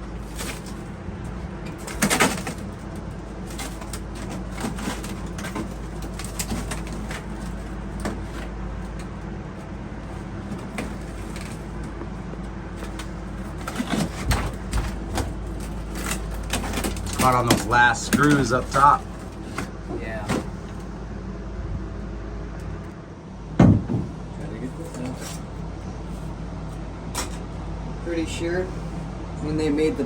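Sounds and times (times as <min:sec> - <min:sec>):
panel cracking and scraping: 0:00.0 - 0:20.9, 0:24.0 - 0:25.6
steady low hum: 0:00.0 - 0:30.0.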